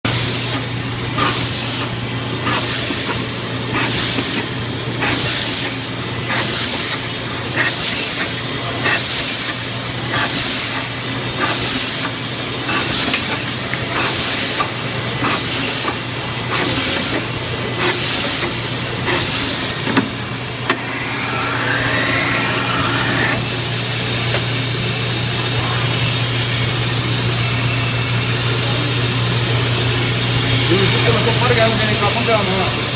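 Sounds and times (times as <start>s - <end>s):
hissing bursts of saw cutting: 0.1s - 13.4s, 14.0s - 19.8s
bandsaw motor hum: 11.6s - 32.9s.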